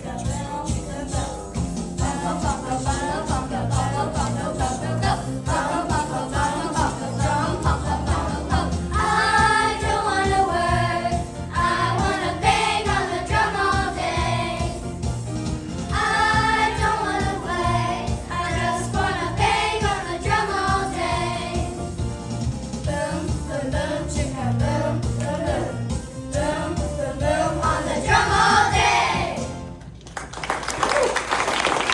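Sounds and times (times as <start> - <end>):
choir singing: 2.0 - 14.8, 15.9 - 21.8, 22.9 - 29.4
applause: 29.9 - 31.9.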